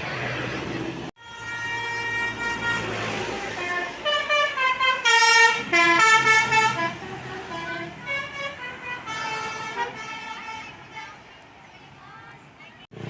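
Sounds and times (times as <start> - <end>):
bus engine running: 0.0 - 13.0
bus horn playing a tune: 1.2 - 11.2.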